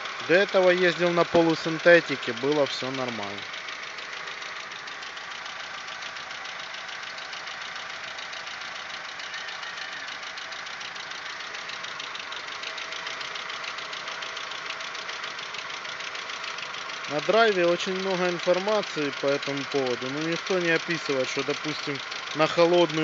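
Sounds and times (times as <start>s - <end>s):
car engine idling: 0.0s - 23.0s
rapid ticking from engine: 0.0s - 23.0s.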